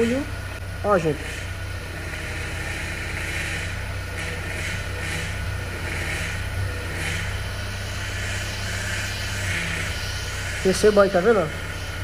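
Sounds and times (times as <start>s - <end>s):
car engine idling: 0.0s - 12.0s
power steering pump whining: 0.0s - 12.0s.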